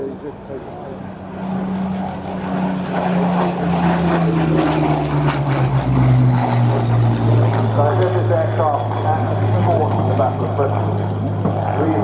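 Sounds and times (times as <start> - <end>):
propeller plane engine flyby: 0.0 - 12.0.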